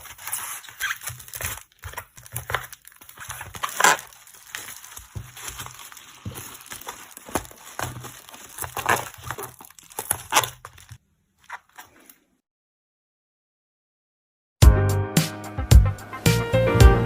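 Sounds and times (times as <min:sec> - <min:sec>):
plastic packaging crinkling: 0:00.0 - 0:12.2.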